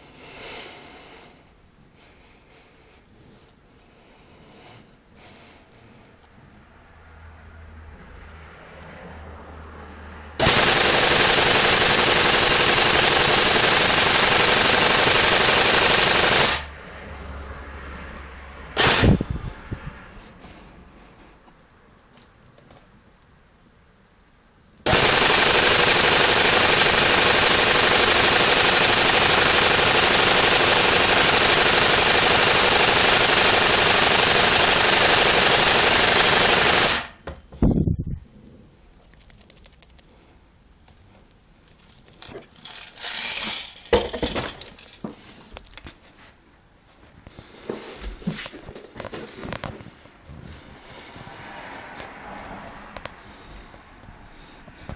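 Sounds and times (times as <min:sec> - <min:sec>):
airsoft gun full-auto bursts: 0:10.4 - 0:16.7, 0:18.8 - 0:19.2, 0:24.8 - 0:37.2.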